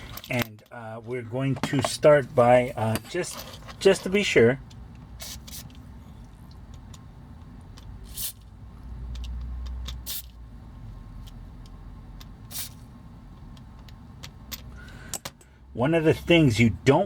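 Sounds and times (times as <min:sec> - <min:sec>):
small tools and plastic parts clicking: 0:04.6 - 0:10.4.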